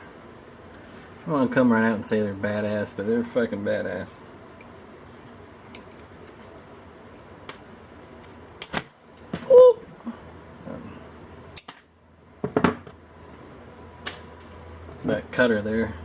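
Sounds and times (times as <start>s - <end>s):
pliers clicking and snapping shut: 11.6s - 11.8s.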